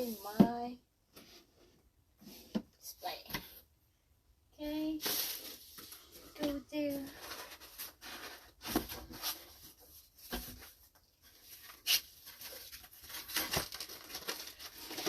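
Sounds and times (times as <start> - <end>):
boxes and packaging rustling: 4.8 - 15.0.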